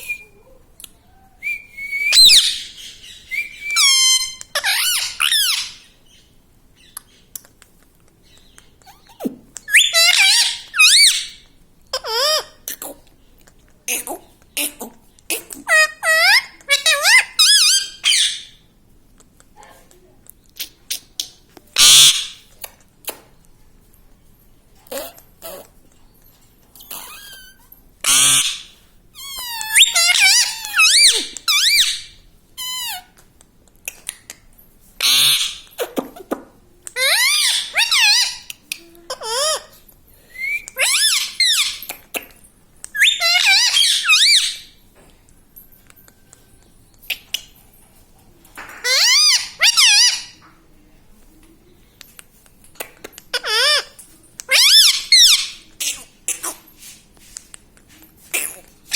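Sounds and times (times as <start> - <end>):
parrot giving shrill calls: 2.0 - 5.9, 9.7 - 11.4, 15.7 - 18.6, 21.8 - 22.4, 26.9 - 33.1, 35.0 - 35.6, 37.0 - 38.5, 40.4 - 41.9, 42.9 - 44.7, 48.8 - 50.4, 54.5 - 56.4
parakeet screeching: 3.8 - 5.9, 8.9 - 11.4, 15.7 - 18.5, 21.8 - 22.4, 26.8 - 33.1, 35.0 - 35.6, 37.0 - 38.5, 40.8 - 41.9, 43.0 - 44.7, 48.8 - 50.4, 54.5 - 56.4.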